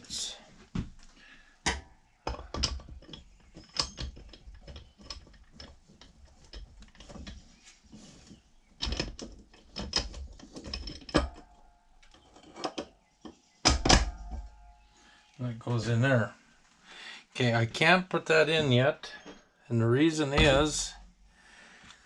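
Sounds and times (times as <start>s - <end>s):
metal parts clinking and clattering: 1.7s - 7.4s, 8.8s - 12.9s.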